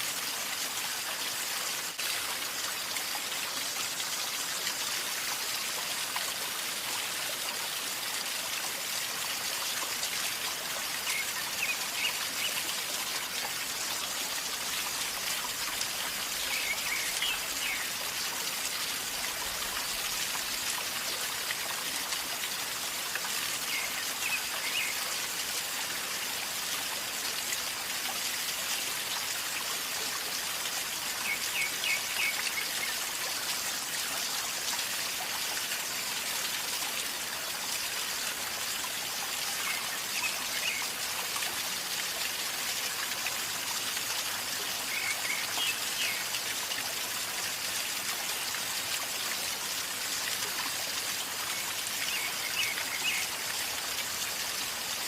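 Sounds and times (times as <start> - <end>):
river water gurgling over stones: 0.0 - 55.0.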